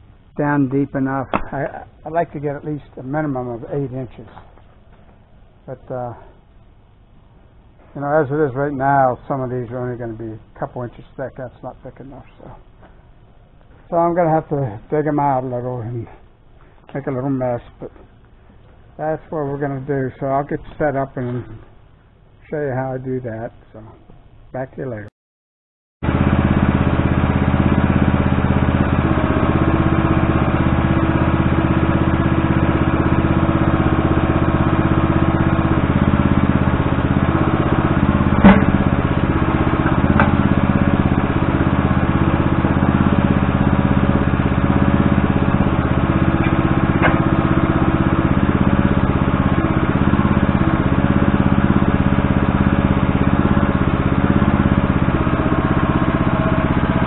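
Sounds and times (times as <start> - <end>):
engine running steadily: 0.0 - 22.4, 26.0 - 57.0
sharp knocks: 38.2 - 39.1, 39.8 - 40.5.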